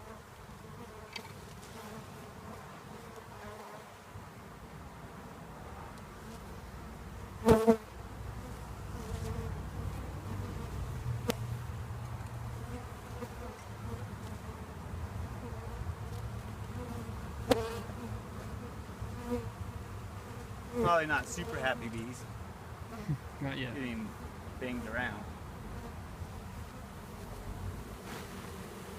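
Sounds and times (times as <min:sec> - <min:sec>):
honeybees buzzing: 0:00.0 - 0:04.2, 0:06.0 - 0:28.9.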